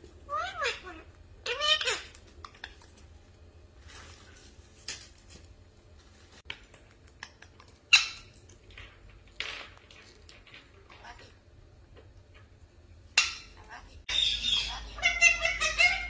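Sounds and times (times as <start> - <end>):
parrots calling: 0.3 - 2.9, 7.1 - 8.5, 13.1 - 16.0
rustling: 2.1 - 7.1.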